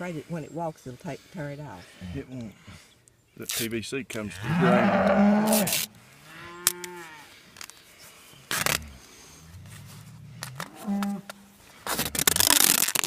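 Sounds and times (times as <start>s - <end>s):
adhesive tape tearing off roll: 3.4s - 3.7s, 5.4s - 5.9s, 8.5s - 8.8s, 11.9s - 13.0s.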